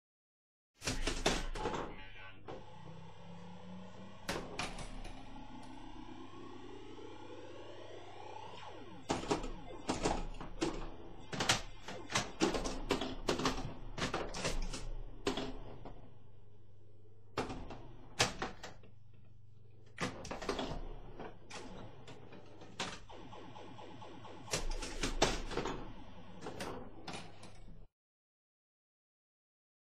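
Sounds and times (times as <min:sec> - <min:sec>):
pinball mechanical clacks: 0:00.8 - 0:02.0, 0:04.0 - 0:16.1, 0:17.4 - 0:19.2, 0:19.9 - 0:27.8
electrical hum: 0:00.8 - 0:27.9
rising electronic tones: 0:02.6 - 0:11.9.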